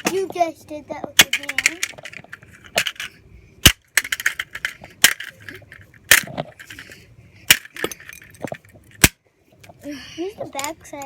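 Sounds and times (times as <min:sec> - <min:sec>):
plastic clicks and clatter: 0:01.1 - 0:03.1, 0:04.0 - 0:06.8
pickaxe striking plastic toy: 0:01.2 - 0:06.4, 0:07.5 - 0:08.0, 0:08.9 - 0:09.2.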